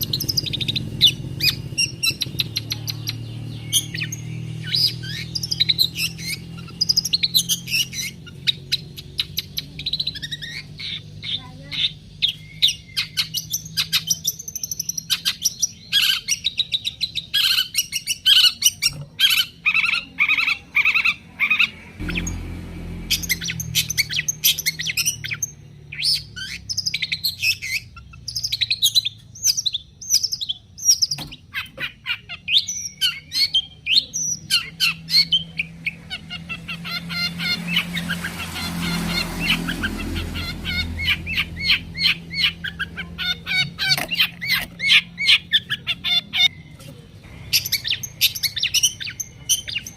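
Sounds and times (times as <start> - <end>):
shrike chattering song: 0.0 - 49.9.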